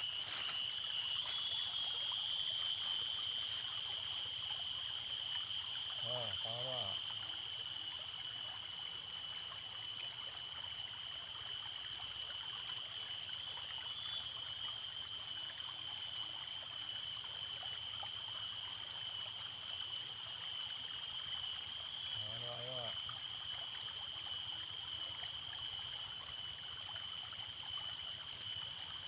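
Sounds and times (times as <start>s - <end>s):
high-pitched whine: 0.0s - 7.2s
stream water trickling: 0.0s - 29.0s.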